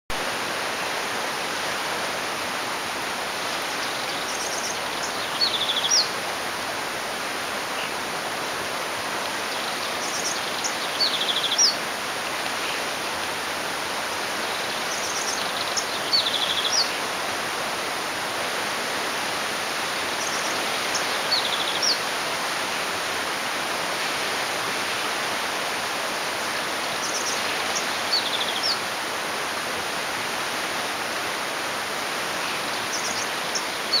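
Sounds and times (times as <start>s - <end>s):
songbird singing trills: 3.9s - 6.1s, 9.5s - 11.8s.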